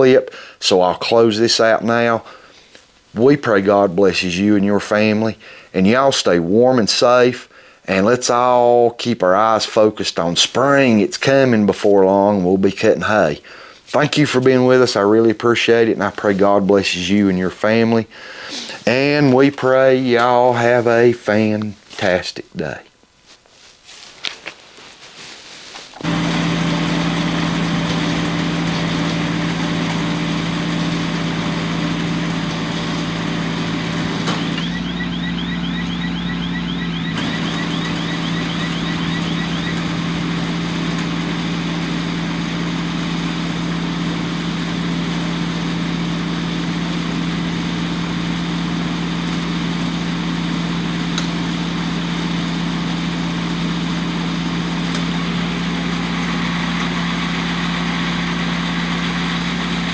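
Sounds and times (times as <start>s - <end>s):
tractor engine running: 26.0s - 59.9s
fast high repeating chirp: 34.6s - 40.5s.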